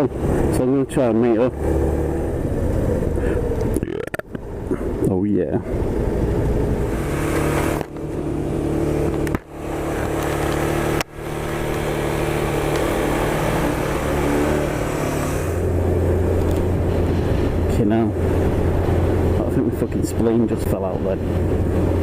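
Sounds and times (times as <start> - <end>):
wind noise: 1.5 - 22.0
motorcycle engine running: 5.6 - 22.0.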